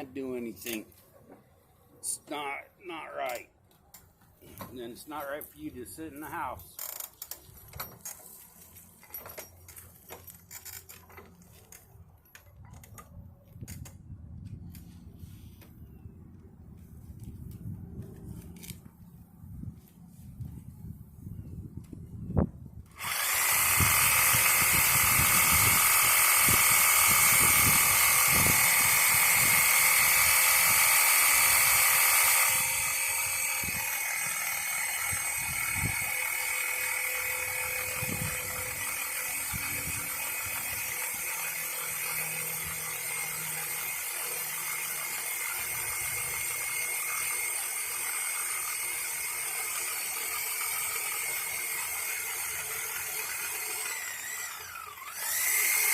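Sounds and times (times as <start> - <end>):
reciprocating saw cutting log: 22.9 - 55.9.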